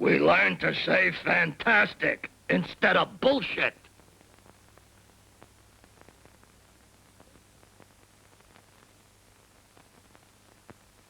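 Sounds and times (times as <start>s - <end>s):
faint hiss: 0.0s - 11.0s.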